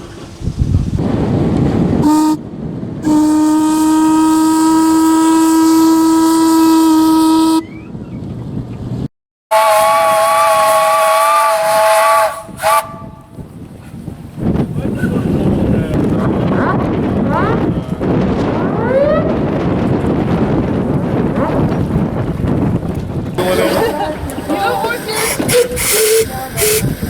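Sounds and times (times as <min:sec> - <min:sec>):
steam whistles blowing: 0:02.0 - 0:02.4, 0:03.0 - 0:07.9, 0:09.5 - 0:13.3, 0:23.4 - 0:27.0
hiss of steam: 0:24.4 - 0:27.0.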